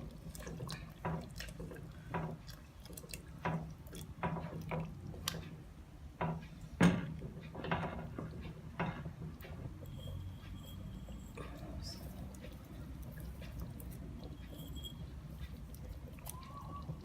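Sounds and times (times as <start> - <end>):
liquid sloshing: 0.0 - 5.6, 11.0 - 17.0
steady low hum: 0.0 - 17.0.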